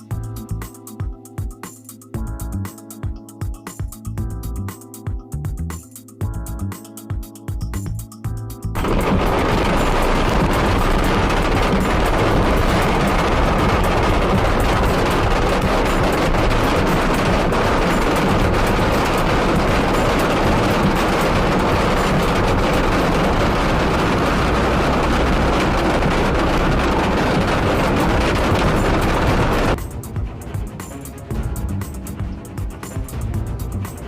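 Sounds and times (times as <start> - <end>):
heavy rain falling: 8.8 - 29.8.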